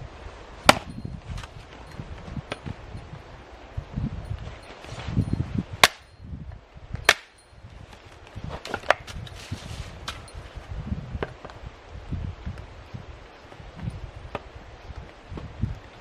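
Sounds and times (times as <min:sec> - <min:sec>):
axe blade striking wood: 0:00.7 - 0:01.5, 0:05.8 - 0:06.1, 0:07.1 - 0:07.4
rustling and handling noise: 0:07.6 - 0:10.7.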